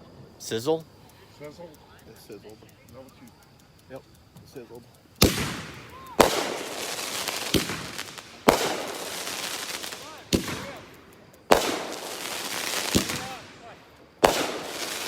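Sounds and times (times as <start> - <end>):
fireworks hissing spray: 4.6 - 15.0
fireworks bangs: 5.2 - 15.0.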